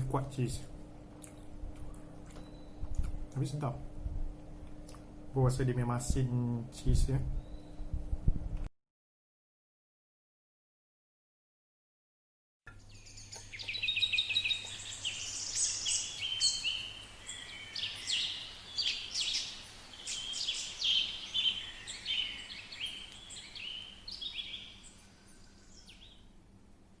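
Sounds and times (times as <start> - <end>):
small birds chirping: 0.0 - 3.8, 6.8 - 8.0, 12.7 - 26.4
faint steady hum: 0.0 - 8.7, 12.7 - 27.0.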